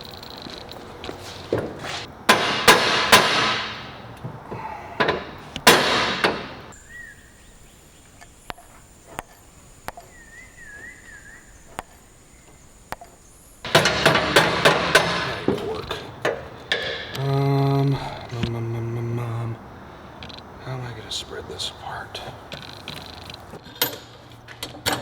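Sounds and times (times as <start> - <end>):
hammer striking steel frame: 1.2 - 6.8, 13.7 - 17.2.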